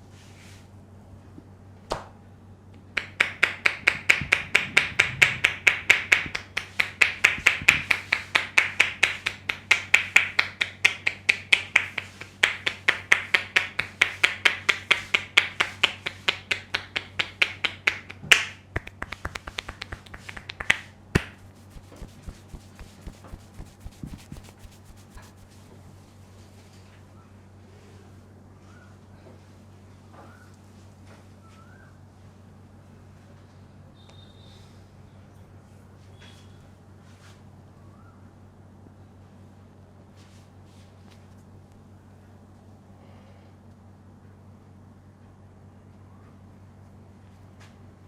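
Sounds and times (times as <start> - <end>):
hands snapping in head massage: 3.0 - 25.6.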